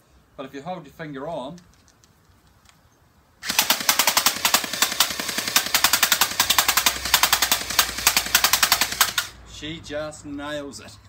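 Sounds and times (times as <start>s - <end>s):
gel blaster firing full auto: 3.4s - 9.4s.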